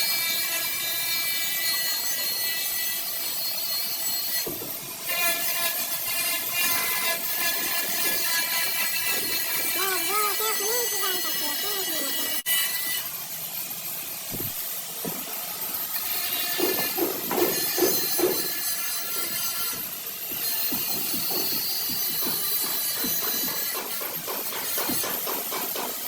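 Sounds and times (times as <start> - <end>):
angle grinder on sheet metal: 0.0 - 14.7, 15.6 - 26.0
short rapid knocks: 20.6 - 26.0.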